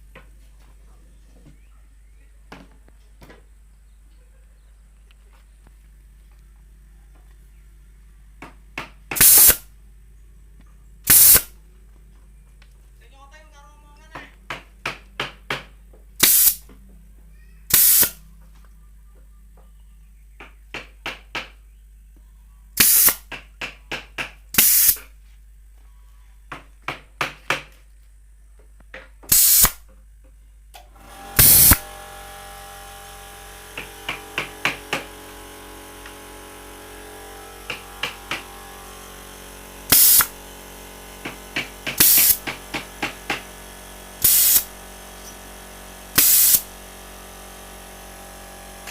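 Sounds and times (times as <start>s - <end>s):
pneumatic nail gun firing: 9.1s - 9.7s, 11.0s - 11.6s, 16.2s - 16.6s, 17.7s - 18.2s, 22.8s - 23.4s, 24.5s - 25.1s, 29.3s - 29.8s, 30.8s - 48.9s
machine hum: 30.8s - 48.9s.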